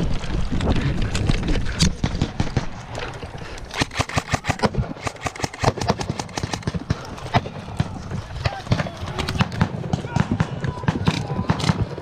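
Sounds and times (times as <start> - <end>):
airsoft guns firing: 3.7 - 12.0.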